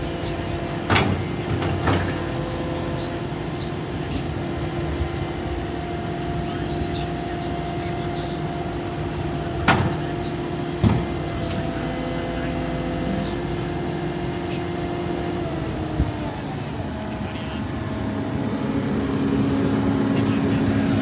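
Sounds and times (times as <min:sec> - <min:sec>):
diesel engine running: 0:00.0 - 0:21.0
sharp clunks: 0:00.9 - 0:02.5, 0:09.6 - 0:10.2, 0:10.8 - 0:11.6.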